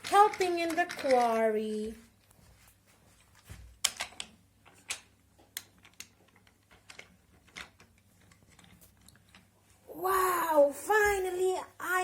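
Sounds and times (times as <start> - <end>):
toy pieces clicking and knocking: 0.0 - 2.0, 3.8 - 9.5.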